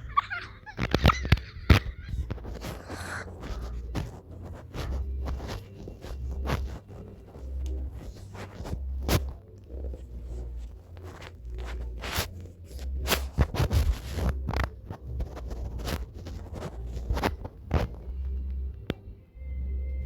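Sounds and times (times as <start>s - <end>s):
person wheezing with laughter: 0.0s - 3.6s.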